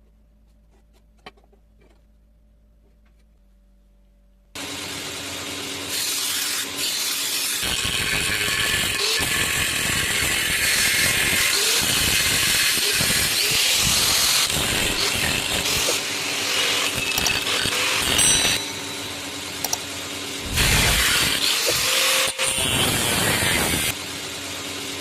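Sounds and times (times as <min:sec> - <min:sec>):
power tool grinding metal: 0:04.8 - 0:24.0.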